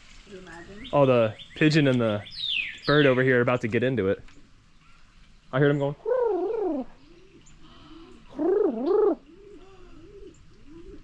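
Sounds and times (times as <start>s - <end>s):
bird warbling calls: 0.3s - 3.6s, 4.4s - 11.0s.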